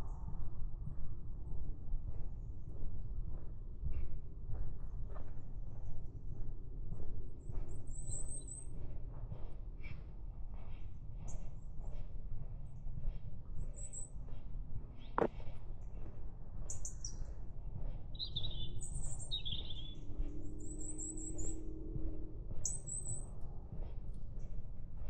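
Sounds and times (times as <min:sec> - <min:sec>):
songbirds singing: 0:18.1 - 0:21.6.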